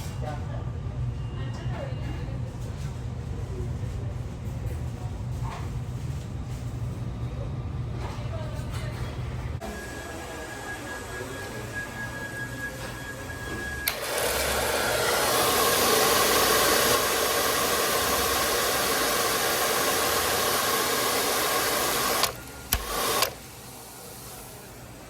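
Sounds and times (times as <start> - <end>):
hand dryer blowing: 13.5 - 25.0.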